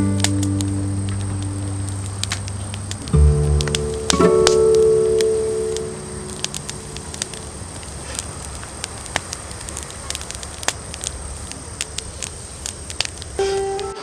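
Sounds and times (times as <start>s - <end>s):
pitched music notes: 0.0s - 7.6s, 13.4s - 14.0s
campfire crackling and popping: 0.0s - 14.0s.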